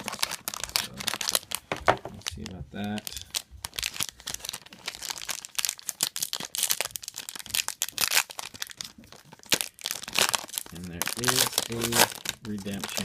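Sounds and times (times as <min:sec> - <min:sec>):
packaging torn and crinkled: 0:00.0 - 0:13.0.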